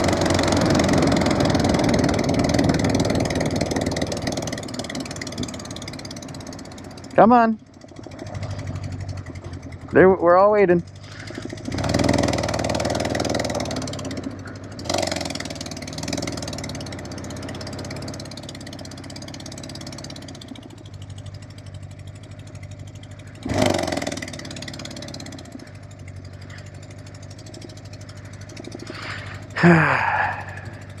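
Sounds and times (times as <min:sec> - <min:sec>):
motorcycle engine misfiring: 0:00.0 - 0:31.0
rider talking: 0:07.0 - 0:07.6, 0:09.9 - 0:11.4, 0:29.5 - 0:30.9.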